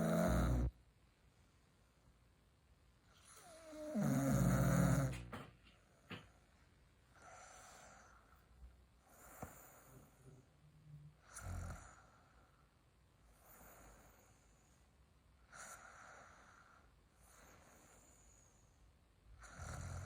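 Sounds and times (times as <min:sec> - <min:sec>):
person snoring: 0:00.0 - 0:00.7, 0:03.4 - 0:05.3
quiet breaths: 0:00.0 - 0:00.8, 0:03.0 - 0:20.0.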